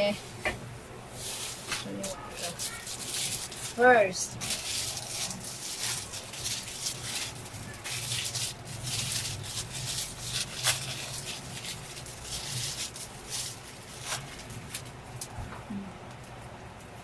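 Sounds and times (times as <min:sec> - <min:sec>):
faint steady hum: 0:00.0 - 0:17.0
rustling and handling noises: 0:00.0 - 0:17.0.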